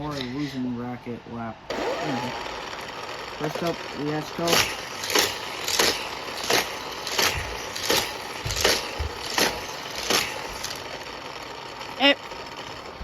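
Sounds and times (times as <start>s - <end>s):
steady background hum: 0.0s - 13.0s
toy car whooshing past: 2.0s - 11.7s.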